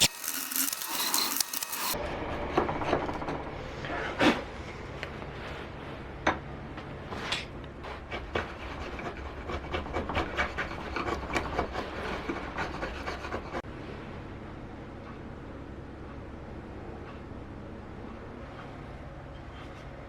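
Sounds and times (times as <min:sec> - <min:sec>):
hand tool rasping wood: 0:00.0 - 0:02.0, 0:07.9 - 0:13.6.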